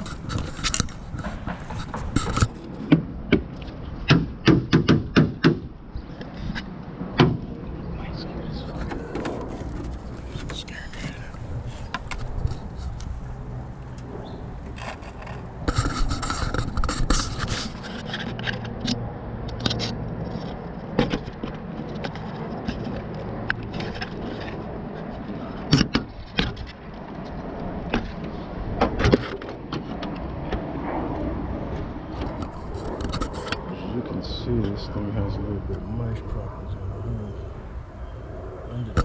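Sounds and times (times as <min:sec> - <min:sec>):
scraping and handling noise: 0:00.0 - 0:04.0, 0:08.6 - 0:14.0, 0:14.6 - 0:30.6, 0:31.7 - 0:33.7
sharp knocks: 0:01.2 - 0:05.7, 0:07.2 - 0:07.5.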